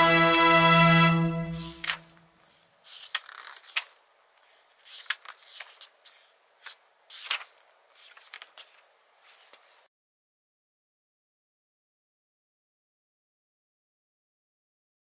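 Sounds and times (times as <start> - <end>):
paper rustling and sliding: 1.5 - 9.9.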